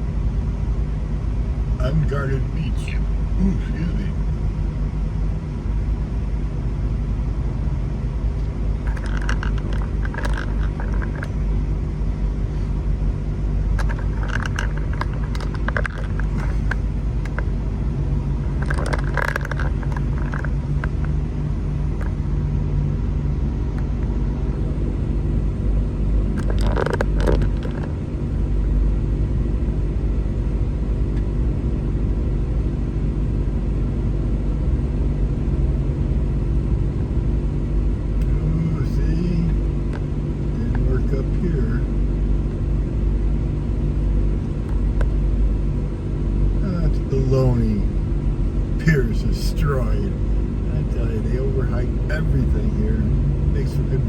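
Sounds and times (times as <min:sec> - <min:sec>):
car engine and road rumble: 0:00.0 - 0:54.0
rattling noise: 0:08.8 - 0:11.4, 0:13.7 - 0:17.6, 0:18.4 - 0:21.3, 0:26.3 - 0:28.0.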